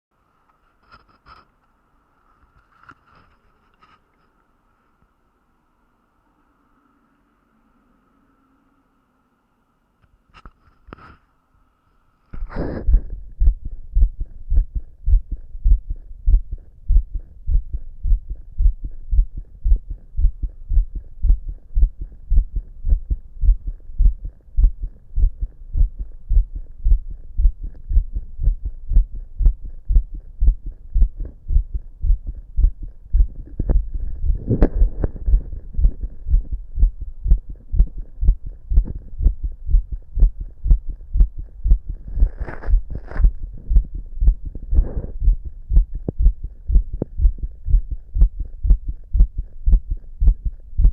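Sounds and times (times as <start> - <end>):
scraping noise: 12.3 - 13.2, 33.3 - 36.2, 42.0 - 43.7, 44.7 - 45.2
fast heartbeat thumps: 12.4 - 50.9.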